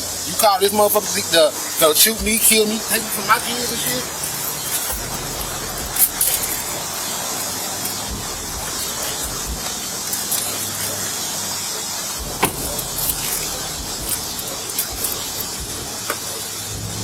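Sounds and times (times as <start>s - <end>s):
low hum of idling vehicles: 0.0s - 17.0s.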